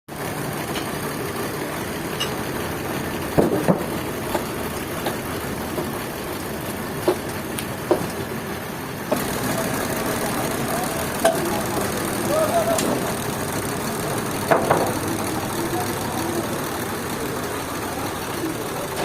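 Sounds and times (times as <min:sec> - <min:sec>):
sawmill machinery running: 0:00.1 - 0:19.0
sharp knocks and clanks: 0:03.3 - 0:06.1, 0:07.0 - 0:08.2, 0:11.2 - 0:11.9, 0:14.4 - 0:15.3.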